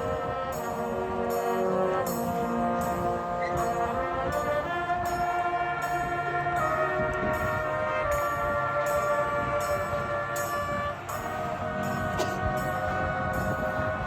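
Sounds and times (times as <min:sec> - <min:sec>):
brass playing held chords: 0:00.0 - 0:14.0
percussion beat: 0:07.4 - 0:14.0.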